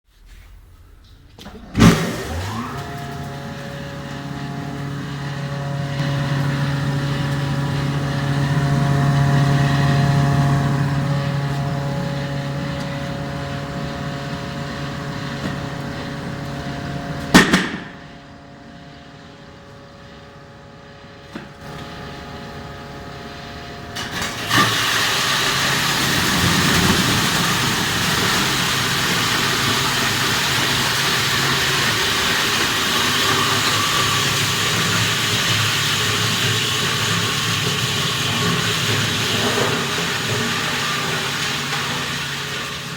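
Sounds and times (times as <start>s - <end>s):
motor hum: 0.2s - 42.9s
sharp metal clank: 17.3s - 18.1s.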